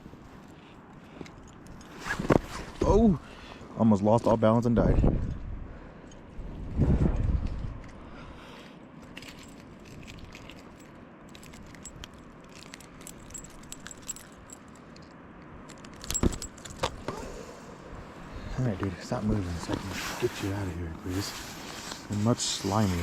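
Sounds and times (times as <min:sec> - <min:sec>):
metallic clinking of fishing lure: 0:09.1 - 0:15.1.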